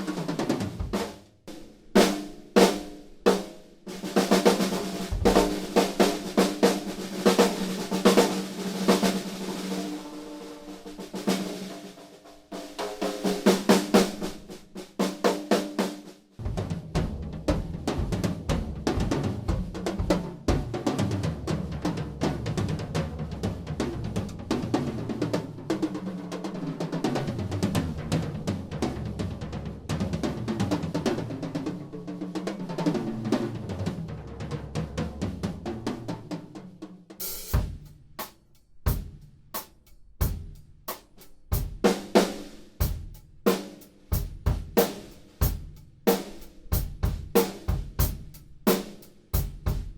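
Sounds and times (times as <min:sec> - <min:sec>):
snare drum rolls: 0:00.0 - 0:38.4
drum kit groove: 0:00.0 - 0:49.9.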